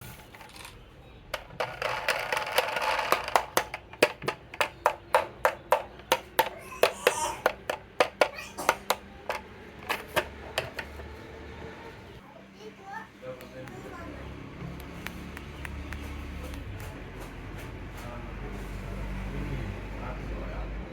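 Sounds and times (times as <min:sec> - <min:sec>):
marbles rolling rattle: 0:01.4 - 0:04.3
marbles clicking on wooden track: 0:01.4 - 0:10.9.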